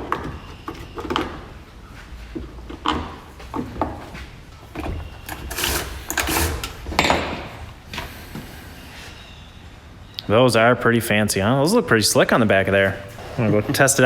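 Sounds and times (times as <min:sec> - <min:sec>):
metal parts clinking and scraping: 0:05.2 - 0:07.3.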